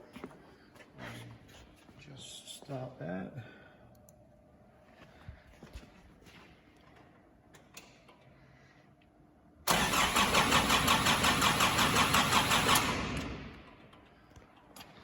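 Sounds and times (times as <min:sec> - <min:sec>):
starter motor cranking engine: 0:09.7 - 0:13.8.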